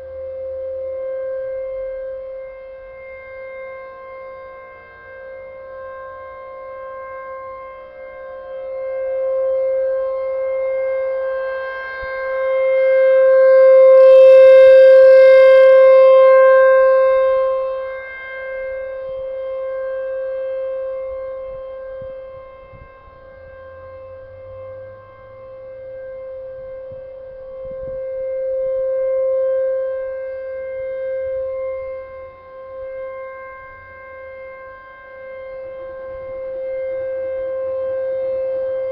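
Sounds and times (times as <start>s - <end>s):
warning siren steady tone: 14.0s - 15.9s.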